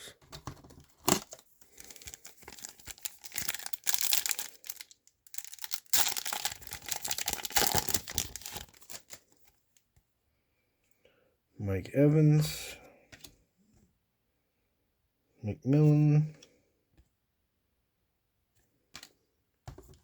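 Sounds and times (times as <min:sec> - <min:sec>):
card pack wrapper tearing: 0:01.0 - 0:09.2.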